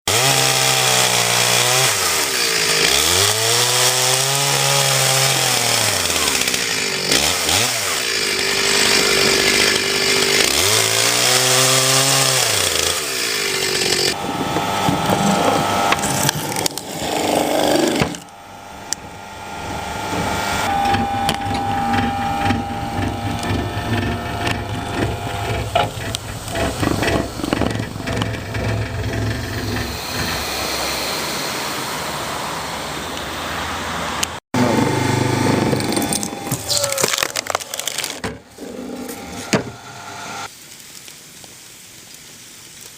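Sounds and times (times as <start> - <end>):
wood cracking: 0.1 - 19.1, 34.6 - 39.7
log splitter motor under load: 0.1 - 40.5.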